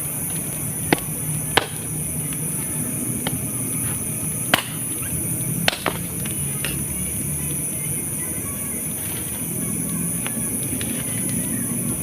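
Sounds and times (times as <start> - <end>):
steady background hiss: 0.0 - 12.0
sharp chopping knocks: 4.5 - 4.8.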